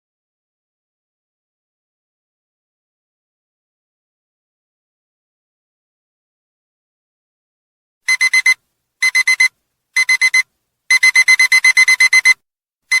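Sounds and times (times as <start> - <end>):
digital alarm clock beeping: 8.1 - 13.0.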